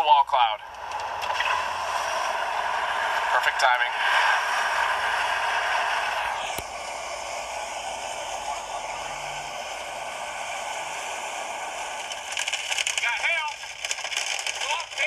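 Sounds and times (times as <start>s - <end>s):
click: 6.5s - 6.7s.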